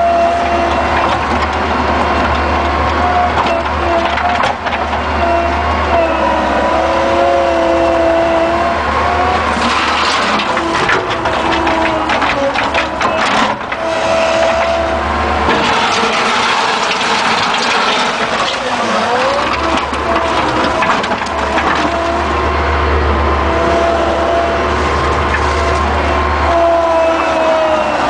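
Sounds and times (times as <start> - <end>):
hydraulic whine: 0.0 - 28.0
loader engine running: 0.0 - 28.0
knocks and scrapes: 9.6 - 22.4, 24.8 - 26.0.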